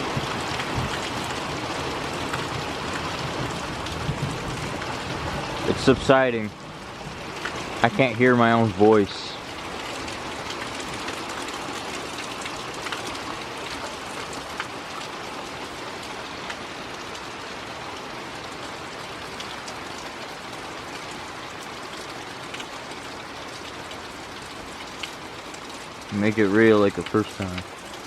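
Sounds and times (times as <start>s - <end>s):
heavy rain hissing: 0.0s - 12.0s, 22.2s - 28.0s
raindrops tapping close by: 0.0s - 28.0s.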